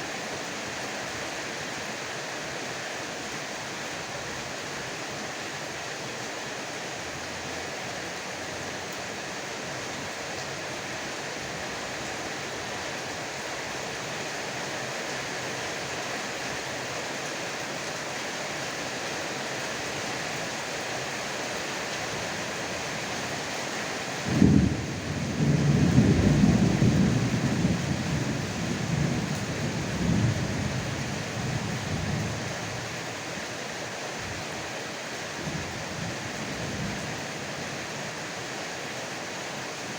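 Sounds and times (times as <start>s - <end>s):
heavy rain falling: 0.0s - 39.9s
thunder crack and rumble: 24.3s - 30.8s.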